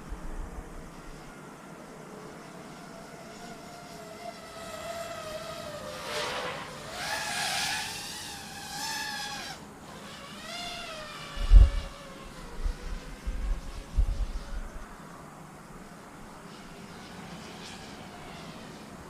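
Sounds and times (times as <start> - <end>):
drone motors whining: 0.0 - 15.0.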